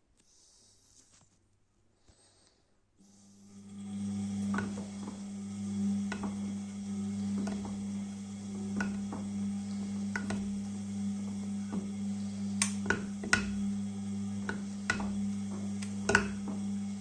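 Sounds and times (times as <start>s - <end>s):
washing machine motor hum: 3.0s - 17.0s
washing machine drum knocks: 12.7s - 13.7s, 14.4s - 16.8s.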